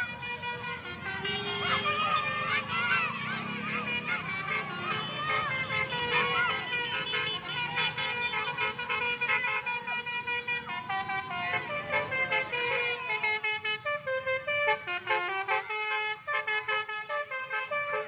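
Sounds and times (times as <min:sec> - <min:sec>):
multi-tone air horn playing tune: 0:00.0 - 0:02.9, 0:03.5 - 0:18.0.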